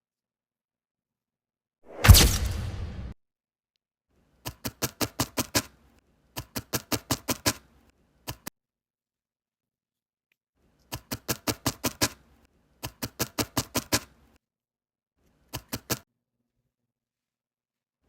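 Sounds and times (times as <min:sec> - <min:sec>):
felting needle stabbing wool: 0:01.9 - 0:02.7.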